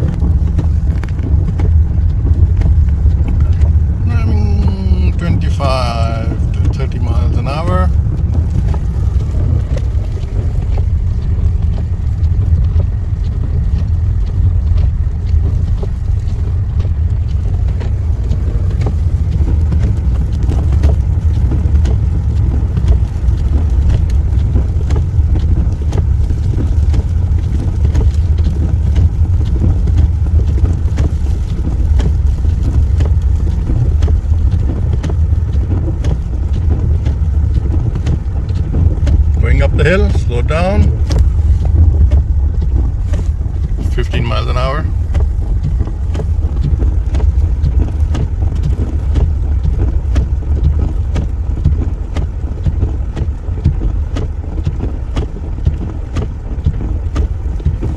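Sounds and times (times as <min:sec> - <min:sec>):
car driving on snow: 0:00.0 - 0:57.9.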